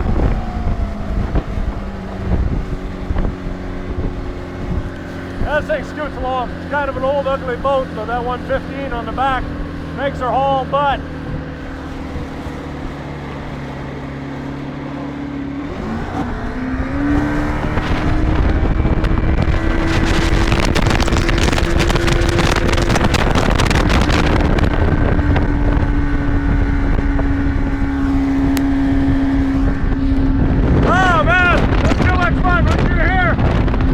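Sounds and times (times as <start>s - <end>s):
wind rushing: 0.0s - 10.0s, 10.9s - 33.9s
outboard motor running: 0.0s - 33.9s
water rushing: 0.0s - 33.9s.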